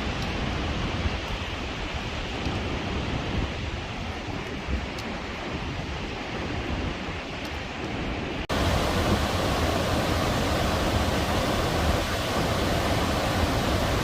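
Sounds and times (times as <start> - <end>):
whitewater rushing: 8.5 - 14.0.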